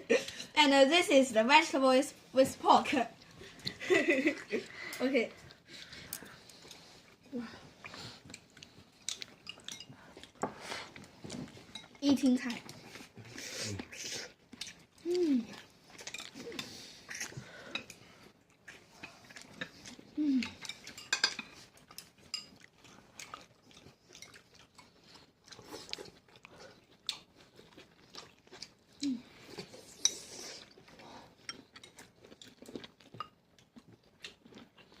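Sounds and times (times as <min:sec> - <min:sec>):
chewing and biting: 0:07.8 - 0:11.9, 0:12.6 - 0:35.0.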